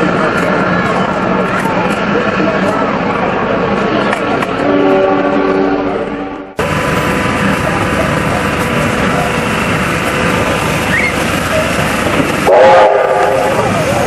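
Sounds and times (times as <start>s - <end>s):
train machinery rumbling: 0.0s - 14.0s
loud train whistle: 4.6s - 6.5s, 12.4s - 13.7s.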